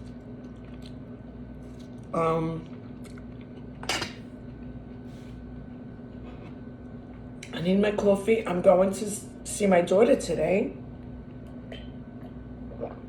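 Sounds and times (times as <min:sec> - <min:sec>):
steady low hum: 0:00.0 - 0:13.0
dishware clinking: 0:03.8 - 0:04.2.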